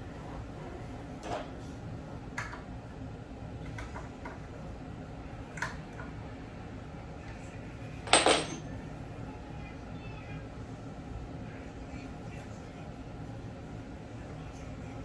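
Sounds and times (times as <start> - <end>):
furniture assembly clicks and knocks: 8.1 - 8.6.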